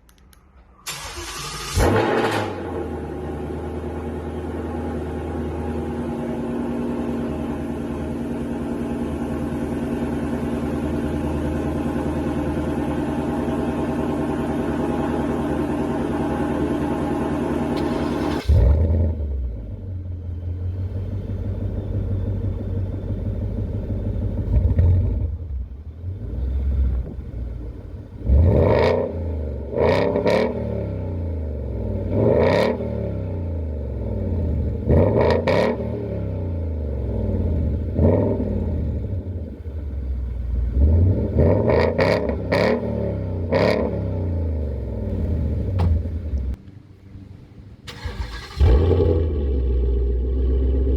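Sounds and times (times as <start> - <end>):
engine revving: 0.9 - 4.0, 17.0 - 39.6, 40.4 - 46.6, 47.9 - 50.9
car engine idling: 2.7 - 28.5, 35.9 - 41.4, 43.1 - 50.9.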